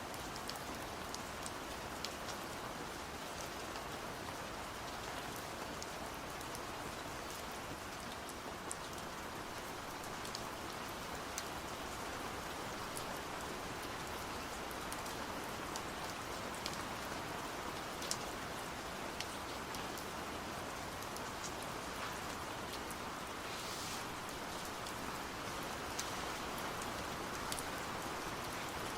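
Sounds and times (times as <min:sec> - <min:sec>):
rain hissing: 0:21.3 - 0:28.9.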